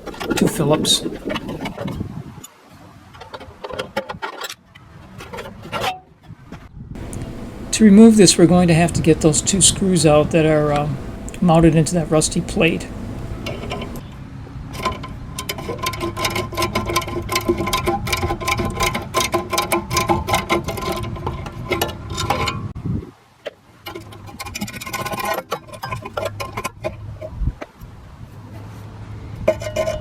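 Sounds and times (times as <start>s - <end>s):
power driver rattling: 7.0s - 14.0s.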